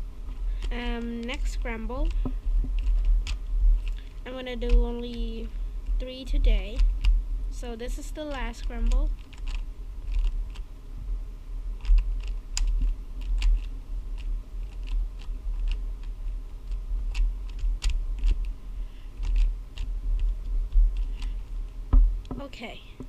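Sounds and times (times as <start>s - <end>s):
low handling rumble: 0.0s - 23.0s
plastic puzzle cube clicking: 11.8s - 16.1s, 19.2s - 20.3s.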